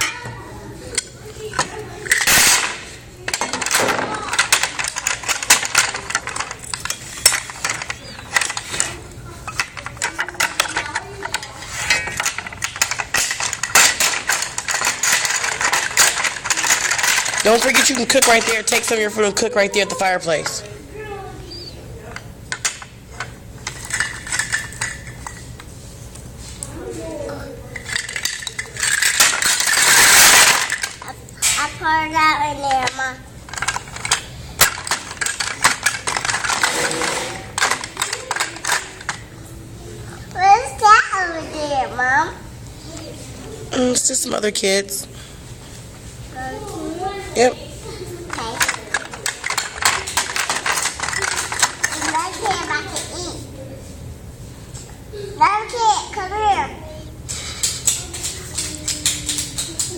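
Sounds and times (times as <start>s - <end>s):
faint voices: 0.0s - 25.3s, 26.4s - 32.1s, 33.5s - 44.3s, 46.3s - 55.6s
toy pots and pans clattering: 0.9s - 20.7s, 22.1s - 25.6s, 27.7s - 31.7s, 32.6s - 39.3s, 47.4s - 53.2s, 57.3s - 59.9s.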